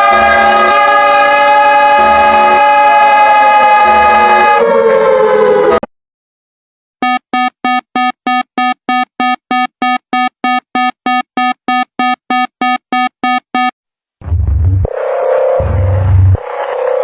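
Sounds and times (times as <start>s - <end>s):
short electronic alarm beeps: 7.0s - 13.7s.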